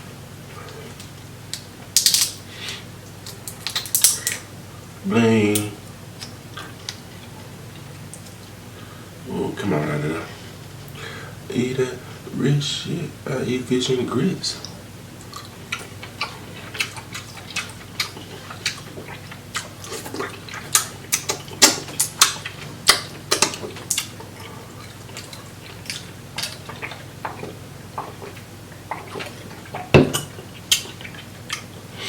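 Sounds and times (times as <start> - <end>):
wet eating sounds: 14.6 - 32.0.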